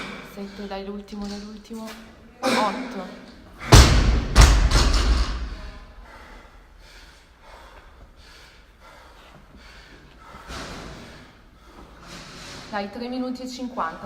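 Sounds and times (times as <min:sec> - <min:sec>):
barbell thud on floor: 0:03.7 - 0:05.7
heavy breathing: 0:05.3 - 0:12.9.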